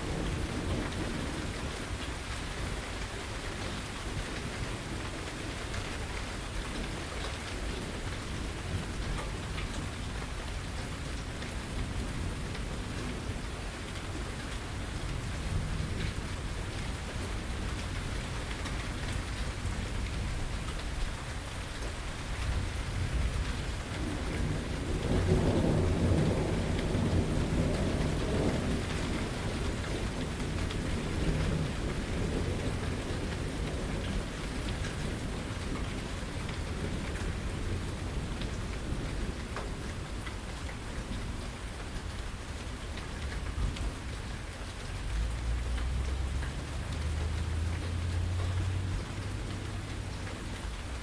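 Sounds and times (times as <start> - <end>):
steady rain: 0.0 - 51.0
rolling thunder: 22.6 - 39.9.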